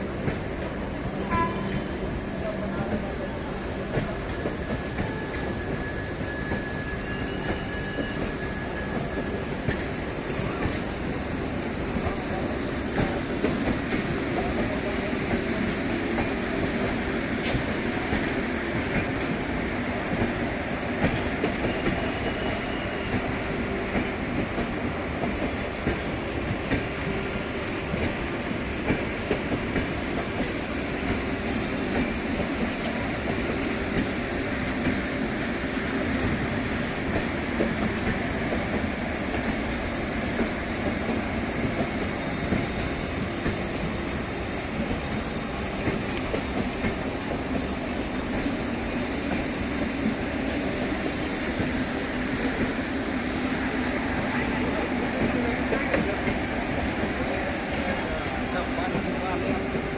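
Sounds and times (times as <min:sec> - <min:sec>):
train rumbling: 0:00.0 - 0:59.9.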